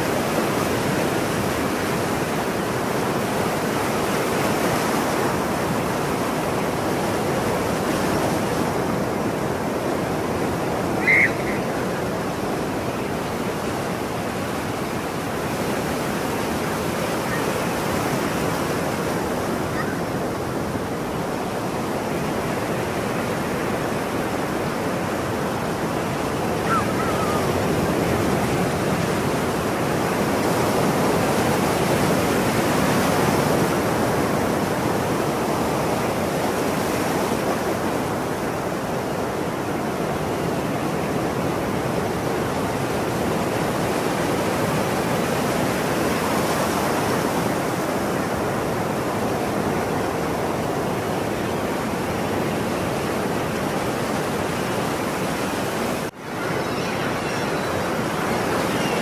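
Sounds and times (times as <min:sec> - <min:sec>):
ocean surf washing: 0:00.0 - 0:59.0
seagull call: 0:10.9 - 0:12.2, 0:19.6 - 0:20.2, 0:26.4 - 0:28.4, 0:56.2 - 0:59.0.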